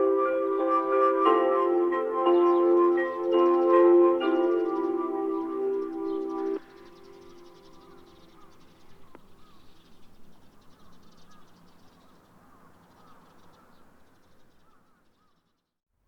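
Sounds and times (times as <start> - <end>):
chime melody from loudspeaker: 0.0 - 6.6
faint bird calls: 1.2 - 15.6.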